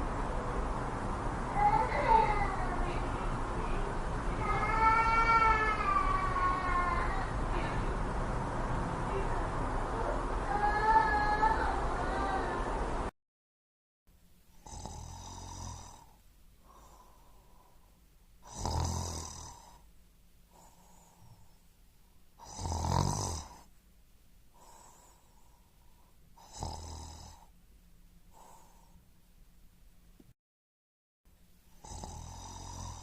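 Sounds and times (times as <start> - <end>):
loud snores: 14.6 - 17.0, 18.4 - 19.9, 22.4 - 23.7, 26.4 - 27.5, 31.8 - 33.0
soft breath: 16.0 - 18.0, 20.5 - 22.4, 24.5 - 26.5, 28.3 - 29.2.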